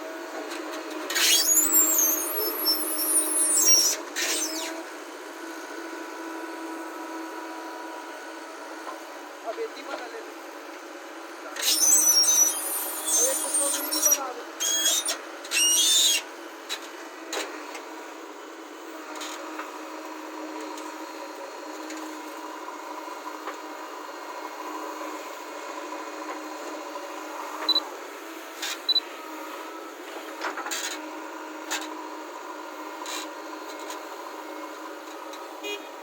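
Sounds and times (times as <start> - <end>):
construction machinery droning: 0.0 - 36.0
loud short bursts: 11.6 - 15.0.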